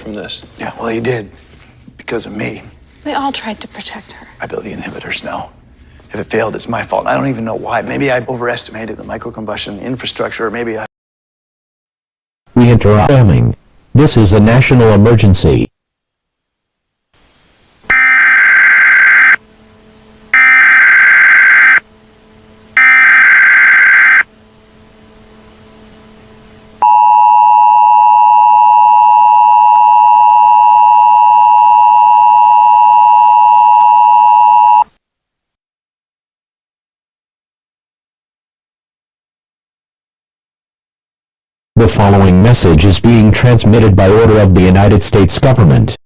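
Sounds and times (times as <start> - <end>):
two-tone attention signal: 17.9 - 19.4, 20.4 - 21.8, 22.8 - 24.2
warbling data bursts: 17.9 - 19.4, 20.3 - 21.8, 22.8 - 24.2.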